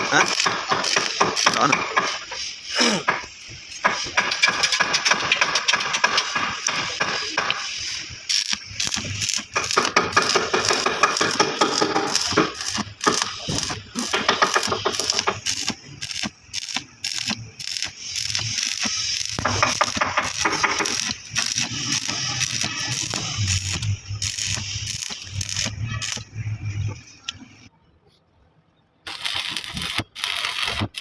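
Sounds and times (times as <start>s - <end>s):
sharp metal clicks and clanks: 0.0s - 2.2s, 3.2s - 7.6s, 8.3s - 26.3s
noisy hiss: 0.0s - 27.7s.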